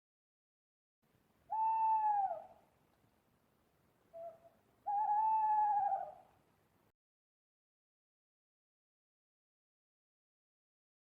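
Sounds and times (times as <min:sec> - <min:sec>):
owl hooting: 0:01.5 - 0:02.6, 0:04.1 - 0:06.3.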